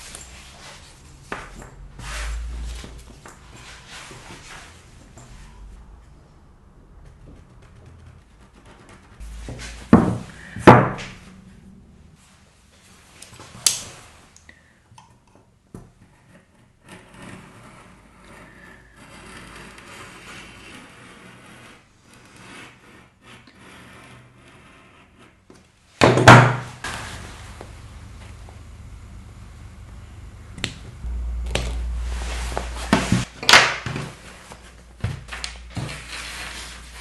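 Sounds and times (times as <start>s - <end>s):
soft rustling: 31.8s - 33.3s.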